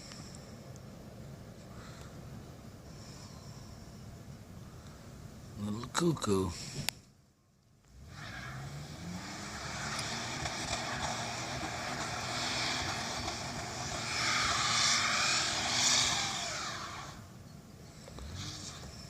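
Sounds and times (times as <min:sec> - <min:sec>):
engine running: 0:07.8 - 0:19.0.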